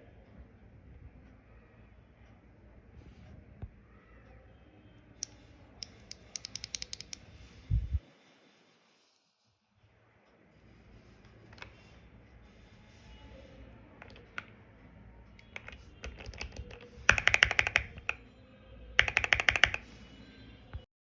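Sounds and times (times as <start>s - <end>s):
mechanical keyboard typing: 5.8s - 7.2s, 14.0s - 14.5s, 15.4s - 18.2s, 19.0s - 19.9s.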